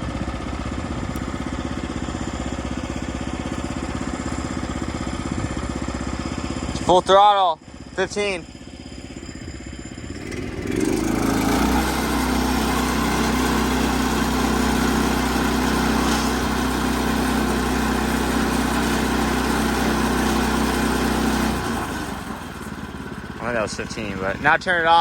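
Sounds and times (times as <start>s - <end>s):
gas engine revving to full throttle: 7.9s - 25.0s.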